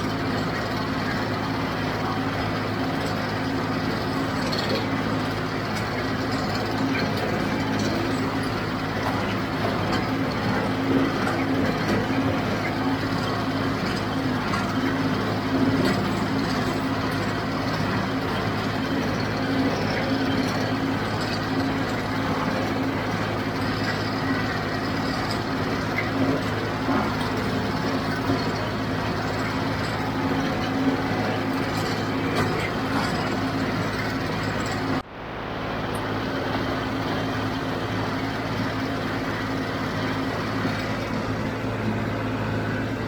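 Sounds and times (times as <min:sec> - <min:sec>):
baler mechanical clatter: 0:00.0 - 0:35.1
tractor diesel engine running: 0:00.0 - 0:43.0.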